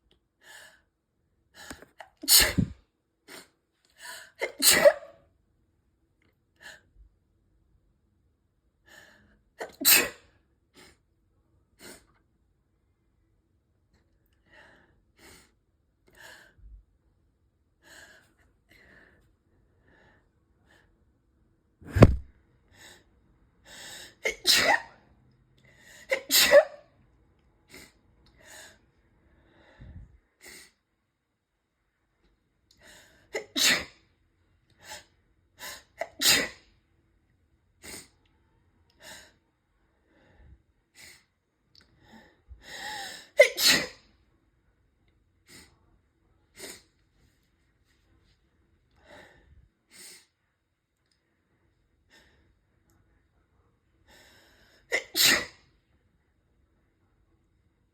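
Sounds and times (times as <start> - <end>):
person sneezing: 2.2 - 2.8, 4.4 - 5.1, 9.6 - 10.3, 21.9 - 22.2, 24.2 - 25.0, 26.1 - 26.8, 33.4 - 33.9, 36.0 - 36.6, 43.3 - 44.0, 54.9 - 55.6.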